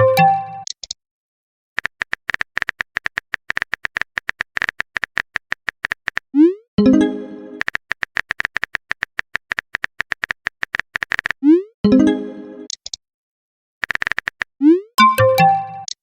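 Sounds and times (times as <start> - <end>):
phone keyboard typing clicks: 1.8 - 6.2, 7.6 - 11.4, 13.8 - 14.5
chiming message tone: 15.0 - 15.9.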